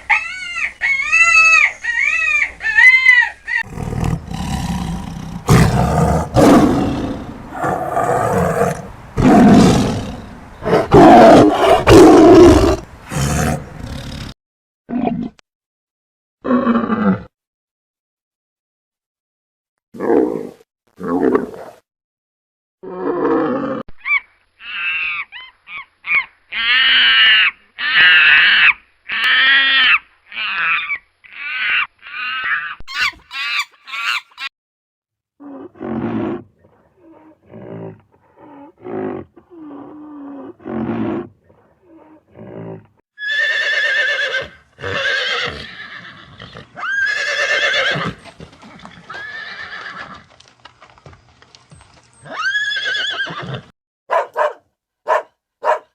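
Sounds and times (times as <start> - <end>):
horses neighing: 43.2 - 50.4, 52.1 - 53.7.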